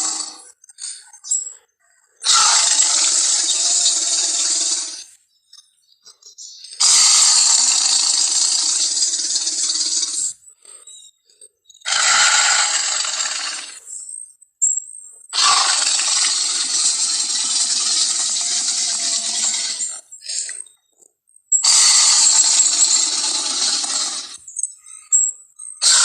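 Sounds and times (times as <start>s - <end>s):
monster roaring: 2.2s - 5.0s, 6.8s - 10.2s, 11.9s - 13.8s, 15.4s - 20.0s, 21.6s - 24.4s.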